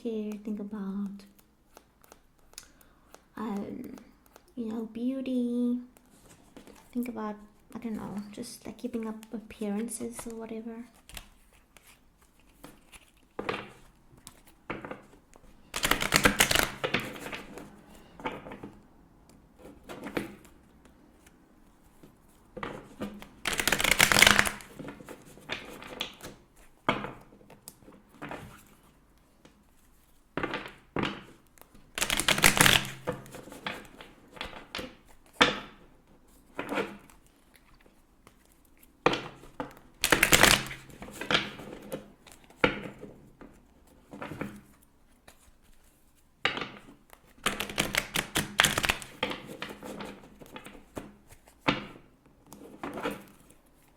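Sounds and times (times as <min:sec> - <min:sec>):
cards being shuffled: 0:00.3 - 0:04.6, 0:05.9 - 0:51.7
light card handling: 0:01.0 - 0:04.6, 0:08.9 - 0:18.7, 0:22.7 - 0:26.7, 0:47.1 - 0:49.8.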